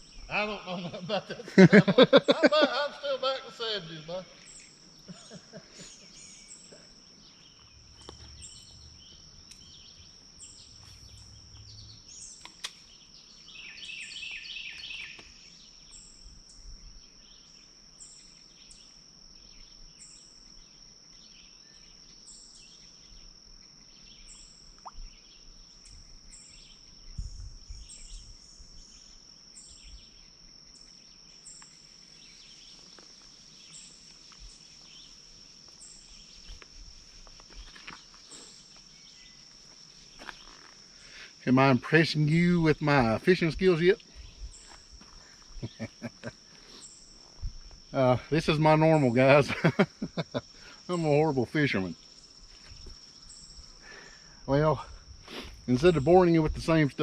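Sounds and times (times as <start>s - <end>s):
bird call: 0.0s - 15.4s
high insect drone: 0.0s - 57.0s.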